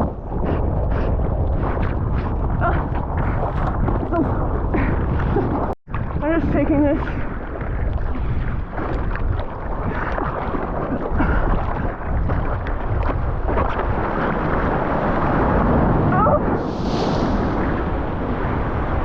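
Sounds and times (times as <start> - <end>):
wind buffeting microphone: 0.0 - 19.0
surf water splashing: 2.6 - 19.0.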